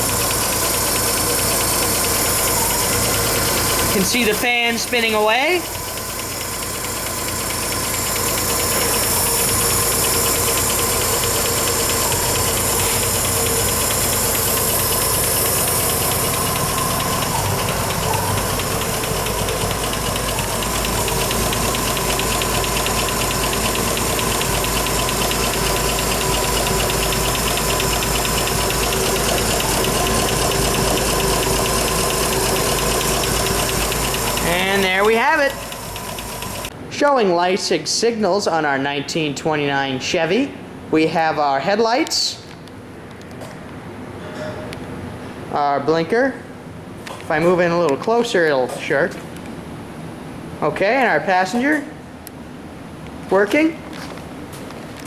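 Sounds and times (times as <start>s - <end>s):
car engine idling: 0.0s - 36.8s
cooling fan spinning: 0.0s - 41.9s, 42.6s - 55.0s.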